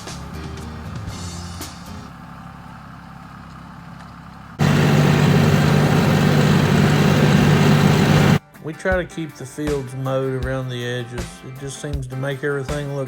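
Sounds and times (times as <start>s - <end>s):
tractor engine running: 0.0s - 8.4s.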